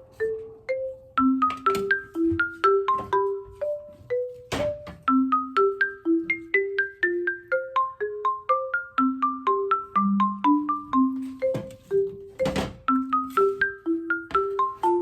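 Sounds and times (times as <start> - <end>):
mallet percussion tune: 0.0 - 15.0.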